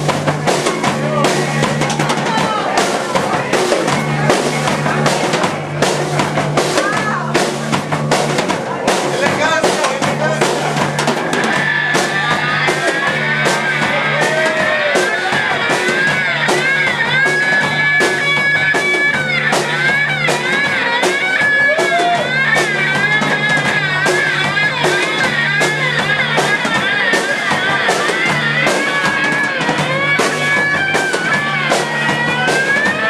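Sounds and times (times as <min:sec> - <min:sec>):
drum kit beating: 0:00.0 - 0:33.0
electric guitar: 0:00.0 - 0:33.0.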